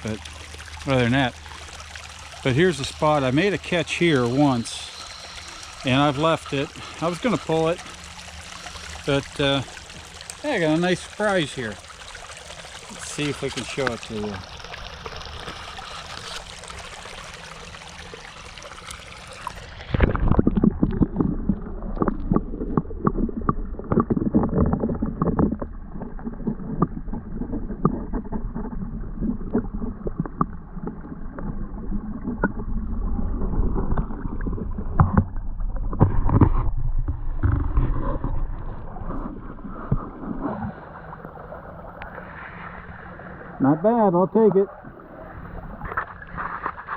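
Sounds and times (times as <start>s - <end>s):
running water: 0.0s - 36.4s
water splashing and sloshing: 0.0s - 46.9s.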